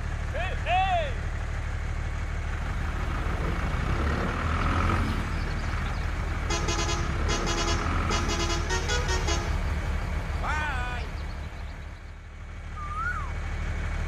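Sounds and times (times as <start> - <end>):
low engine rumble: 0.0 - 14.0
horn tooting short blasts: 6.5 - 9.6.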